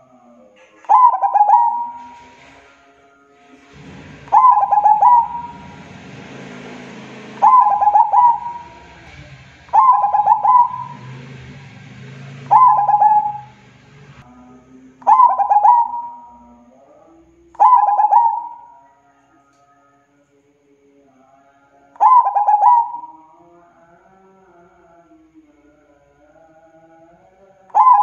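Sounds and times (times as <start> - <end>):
dove cooing: 0.6 - 2.5, 3.7 - 5.8, 7.4 - 8.9, 9.7 - 11.2, 12.4 - 13.5, 15.0 - 16.4, 17.6 - 18.9, 22.0 - 23.2, 27.7 - 28.0.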